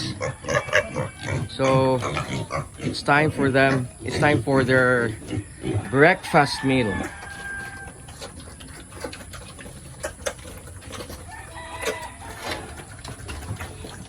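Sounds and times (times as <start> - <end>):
chickens clucking: 0.0 - 14.0
rooster call: 11.3 - 12.9.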